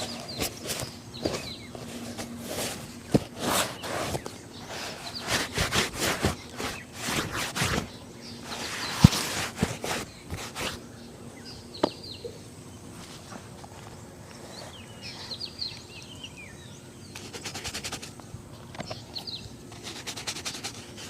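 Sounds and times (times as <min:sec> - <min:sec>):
rubbing strokes on leather: 0:00.0 - 0:10.8, 0:17.2 - 0:18.2, 0:19.7 - 0:21.0
birds chirping faintly: 0:00.0 - 0:21.0.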